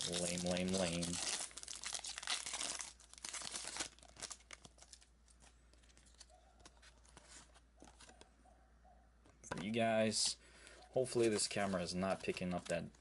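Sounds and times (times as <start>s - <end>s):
foil wrapper tearing and crinkling: 0.0s - 6.3s.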